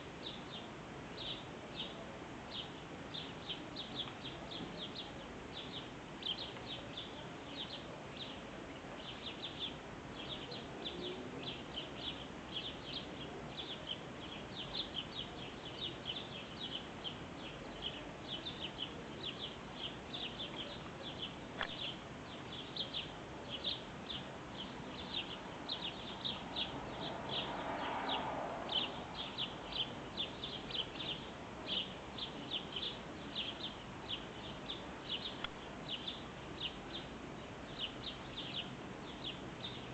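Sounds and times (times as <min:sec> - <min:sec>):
birds chirping: 0:00.0 - 0:39.9
low noise swell: 0:25.6 - 0:30.6.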